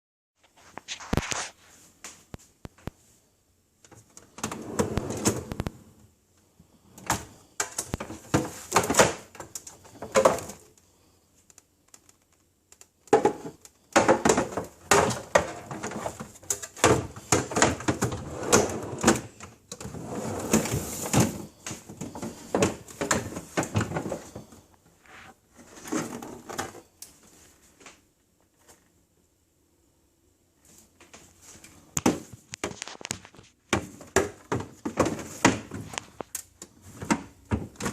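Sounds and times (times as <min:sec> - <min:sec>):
scraping or rustling: 0:00.4 - 0:02.0, 0:17.8 - 0:27.6
items knocking and rattling: 0:07.0 - 0:10.8, 0:13.0 - 0:27.0, 0:31.8 - 0:37.9.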